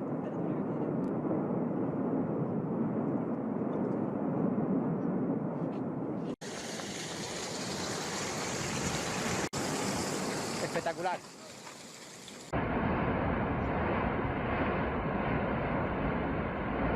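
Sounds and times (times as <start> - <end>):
hissing rush: 6.4 - 12.6
volcano rumbling roar: 12.6 - 16.9.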